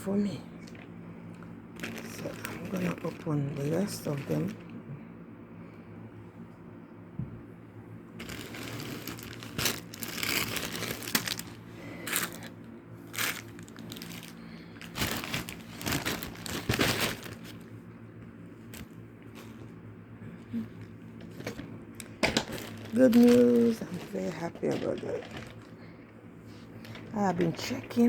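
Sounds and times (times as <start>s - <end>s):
packaging crinkling and rustling: 1.7s - 4.7s, 8.2s - 17.8s, 18.6s - 19.8s, 20.8s - 25.8s.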